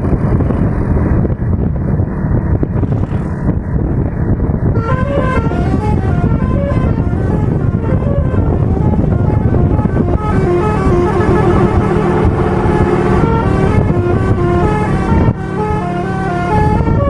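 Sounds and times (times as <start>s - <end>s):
low rumble: 0.0s - 17.0s
multi-tone bus horn melody: 4.7s - 17.0s.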